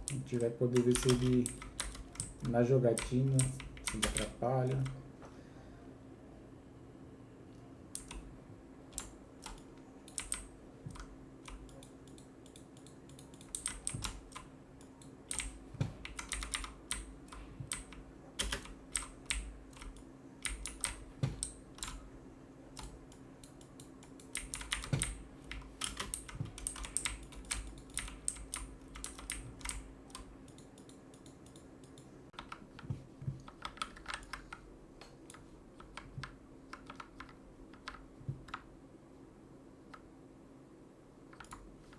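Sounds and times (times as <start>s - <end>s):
mechanical keyboard typing: 0.0s - 5.0s, 8.0s - 8.2s, 8.9s - 22.0s, 22.8s - 32.8s, 33.4s - 34.6s, 35.8s - 38.6s, 41.3s - 41.7s.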